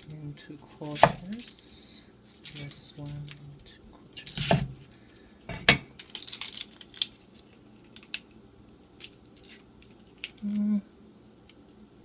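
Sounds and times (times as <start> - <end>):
knife chopping on cutting board: 4.3 - 4.8.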